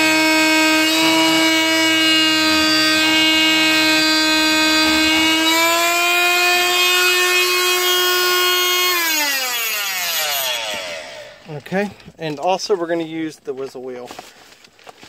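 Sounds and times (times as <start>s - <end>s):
power tool cutting fibreglass: 0.0s - 11.5s.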